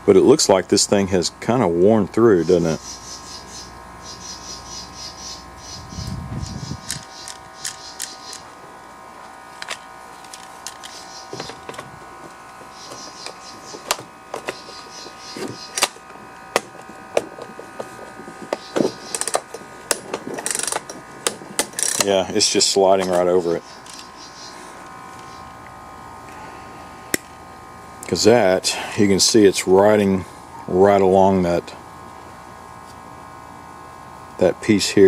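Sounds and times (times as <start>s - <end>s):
steady hum: 0.0s - 35.0s
recoil starter ratcheting rasps: 9.6s - 24.1s.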